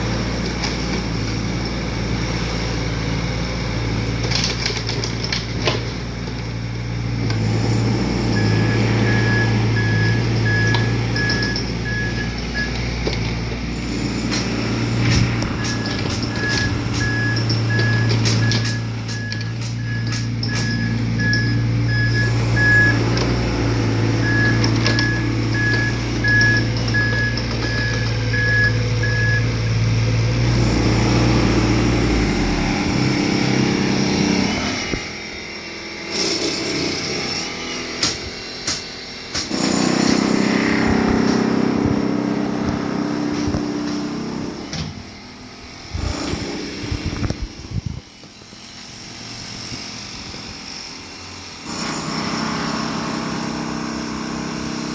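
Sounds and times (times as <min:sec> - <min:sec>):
diesel machinery engine: 0:00.0 - 0:54.9
back-up alarm beeping: 0:08.3 - 0:12.8, 0:15.4 - 0:29.7.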